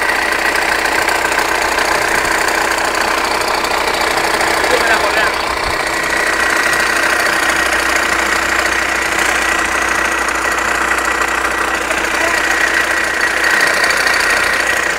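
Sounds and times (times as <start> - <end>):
engine running: 0.0 - 14.9.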